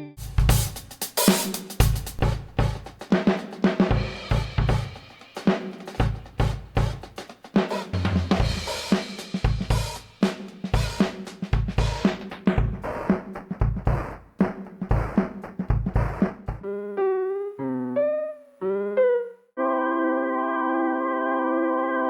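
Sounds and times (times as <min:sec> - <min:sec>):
drum kit playing a beat: 0:00.0 - 0:16.7.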